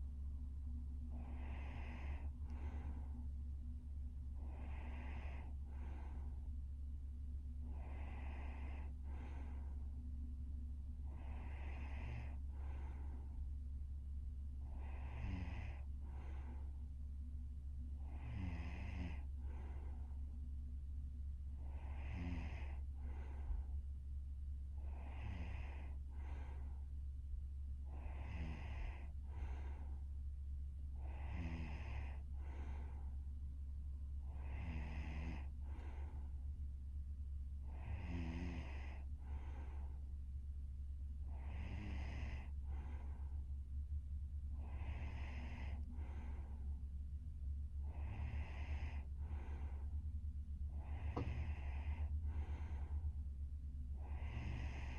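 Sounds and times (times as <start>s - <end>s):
steady low hum: 0.0s - 54.9s
woman snoring: 1.1s - 3.1s, 4.4s - 6.3s, 7.7s - 9.7s, 11.0s - 13.2s, 14.6s - 16.6s, 18.0s - 19.9s, 21.6s - 23.6s, 24.8s - 26.8s, 27.9s - 29.9s, 31.0s - 33.0s, 34.2s - 36.3s, 37.6s - 40.0s, 41.2s - 43.4s, 44.6s - 46.6s, 47.8s - 49.9s, 50.7s - 53.0s, 54.0s - 54.9s.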